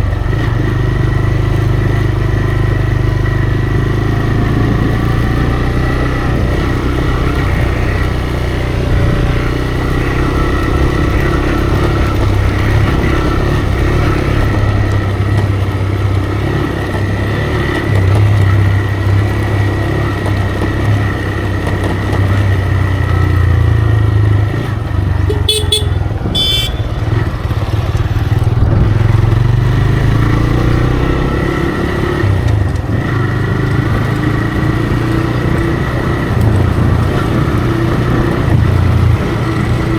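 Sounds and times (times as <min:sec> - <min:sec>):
motorcycle engine running: 0:00.0 - 0:39.9
horn toots: 0:25.2 - 0:27.4.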